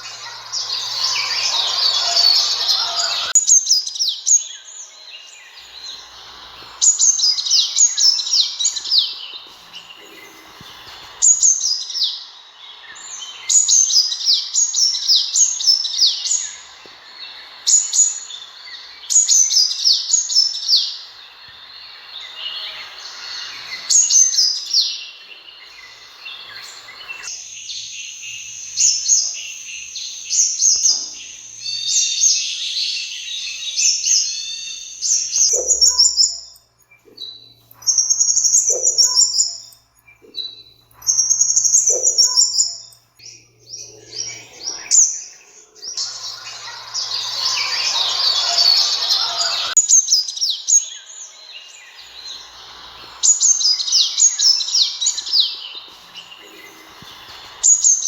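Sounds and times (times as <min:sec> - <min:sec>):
bird calling high sliding notes: 0:00.0 - 0:03.4, 0:43.8 - 0:58.0
background hiss: 0:00.0 - 0:58.0
thin steady high whistle: 0:44.2 - 0:58.0.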